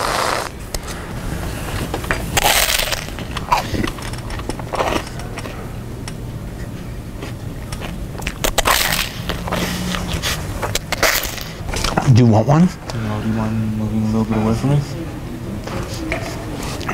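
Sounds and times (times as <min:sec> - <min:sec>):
crunchy snack chewing: 0:02.4 - 0:05.5, 0:07.2 - 0:11.6.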